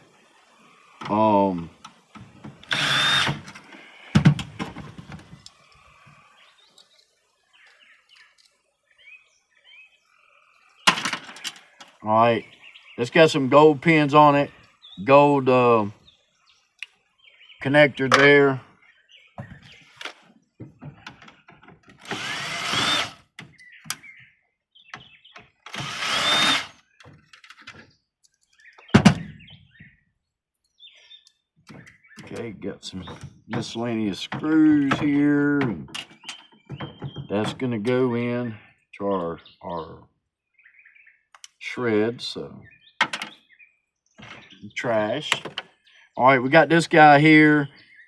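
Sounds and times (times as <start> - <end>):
cordless drill whining: 2.0 - 4.2, 21.9 - 23.4, 25.7 - 26.9
faint bird chirps: 5.5 - 13.5
small clicks and handling noises: 6.7 - 8.6, 27.0 - 28.8
rattle of handled parts: 27.0 - 29.2.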